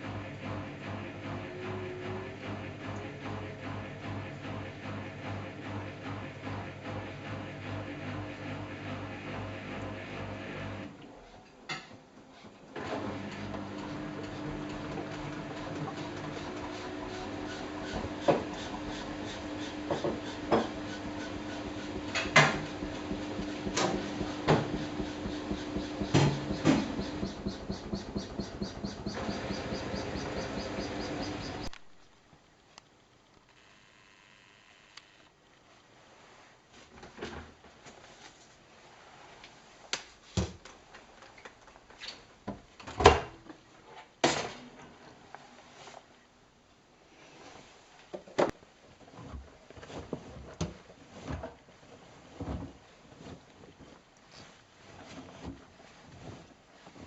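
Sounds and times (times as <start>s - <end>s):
washing machine motor hum: 0.0s - 10.9s, 12.8s - 31.8s
washing machine door clunking: 17.9s - 31.6s
laundry thudding in drum: 19.8s - 29.8s.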